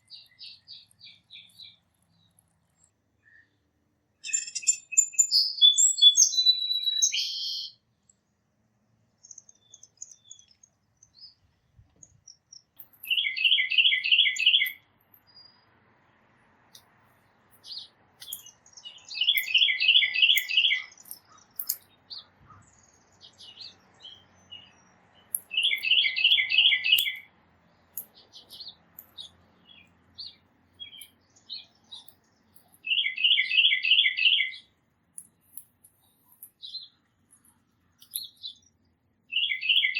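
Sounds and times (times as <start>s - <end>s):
thin bird chirps: 0.0s - 8.4s, 9.1s - 15.8s, 16.6s - 39.9s
high busy birdsong: 0.0s - 39.9s.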